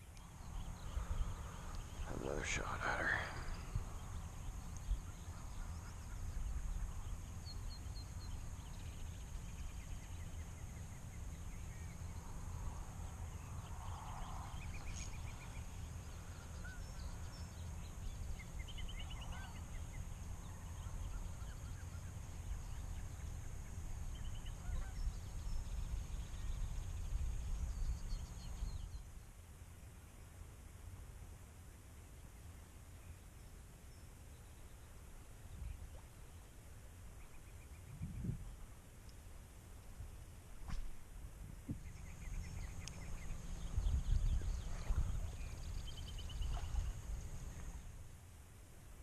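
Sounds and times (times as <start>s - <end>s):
steady low rumble: 0.0s - 29.0s, 37.0s - 48.3s
birds chirping trills: 0.0s - 29.2s, 41.6s - 48.0s.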